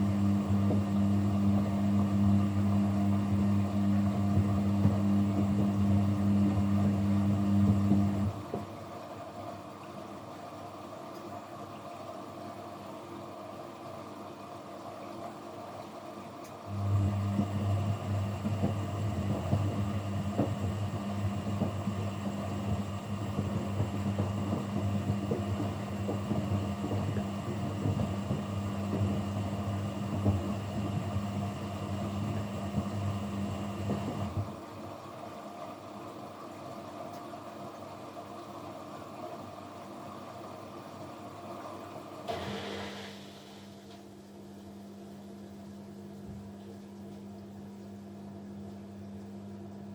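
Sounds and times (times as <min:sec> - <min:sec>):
faint higher hum: 0:00.0 - 0:49.9
washing machine motor hum: 0:00.0 - 0:49.9
short rush of noise: 0:42.3 - 0:43.9.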